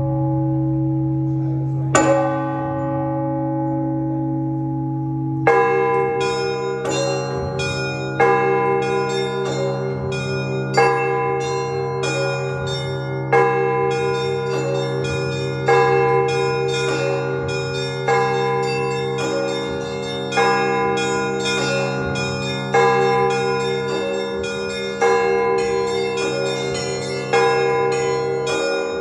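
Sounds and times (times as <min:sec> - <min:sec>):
heavy church bell striking: 0:00.0 - 0:29.0
low bell hum: 0:00.0 - 0:29.0
small bells ringing quickly: 0:06.4 - 0:29.0.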